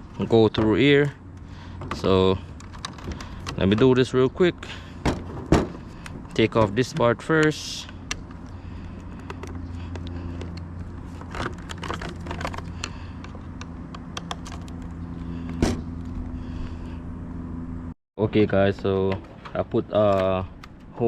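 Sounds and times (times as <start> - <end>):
steady low hum: 0.0 - 18.0
plastic parts clicking: 5.9 - 14.9.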